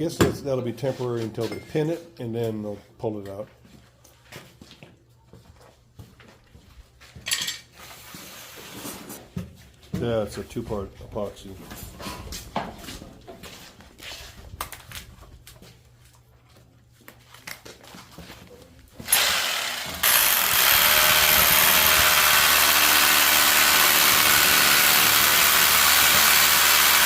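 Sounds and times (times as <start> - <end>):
power tool running: 19.0 - 27.0.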